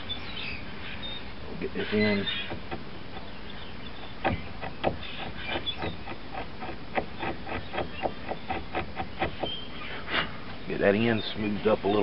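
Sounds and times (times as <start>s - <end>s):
knife shaving wood: 1.9s - 3.4s, 4.2s - 9.6s.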